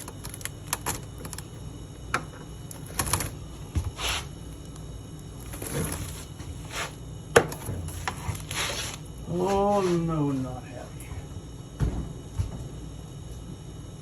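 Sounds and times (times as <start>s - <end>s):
knocks and scrapes under refrigerator: 2.2s - 4.3s, 5.4s - 10.1s.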